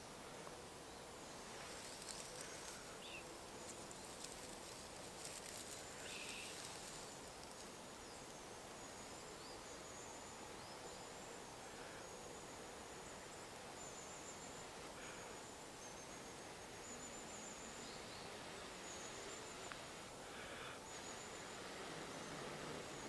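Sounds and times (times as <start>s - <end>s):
high insect trill: 1.6s - 8.0s
light ticking and rustling: 3.6s - 7.8s.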